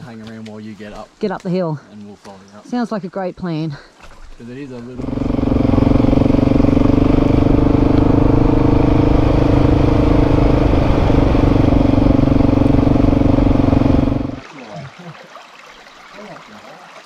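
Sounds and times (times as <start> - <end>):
motorcycle engine idling: 5.0 - 14.4.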